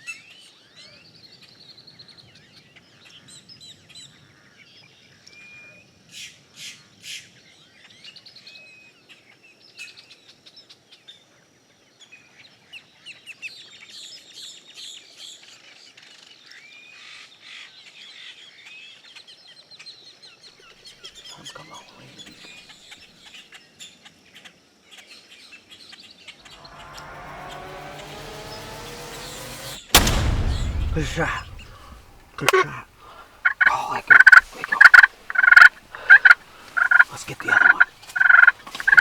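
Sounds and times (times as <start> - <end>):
wild birds chirping: 30.0 - 39.0.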